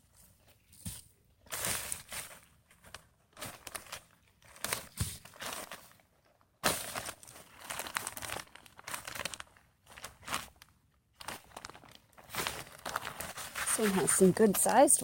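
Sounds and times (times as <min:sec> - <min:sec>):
dry plants rustling: 0:11.2 - 0:15.0
hands digging through soil: 0:11.6 - 0:15.0.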